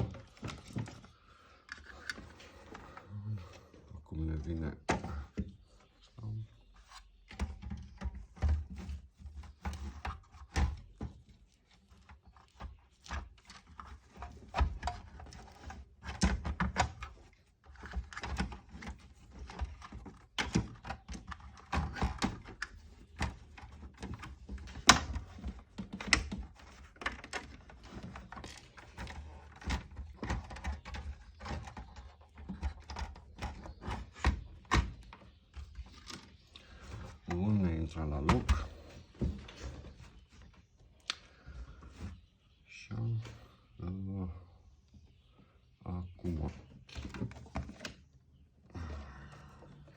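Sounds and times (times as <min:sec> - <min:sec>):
clicks and knocks of parts handled: 0:00.0 - 0:03.1, 0:06.9 - 0:37.4.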